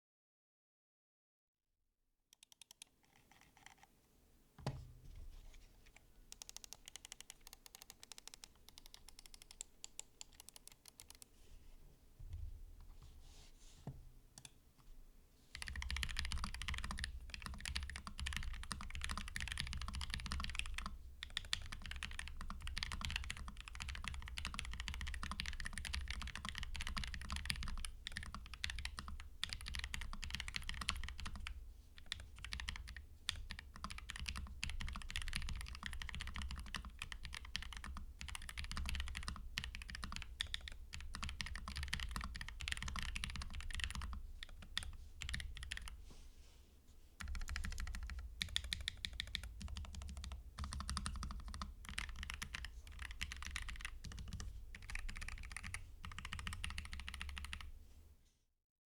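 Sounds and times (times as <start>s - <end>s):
typing on mechanical keyboard: 6.3s - 11.3s, 15.5s - 46.0s, 47.2s - 57.7s.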